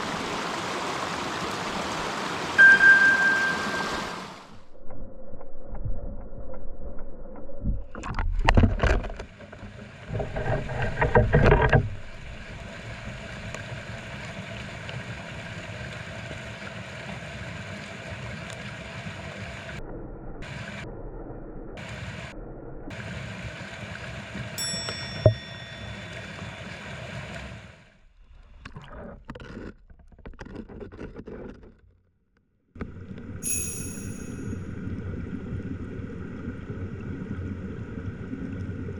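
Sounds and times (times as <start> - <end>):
stream water rushing: 0.0 - 4.6, 22.9 - 27.8.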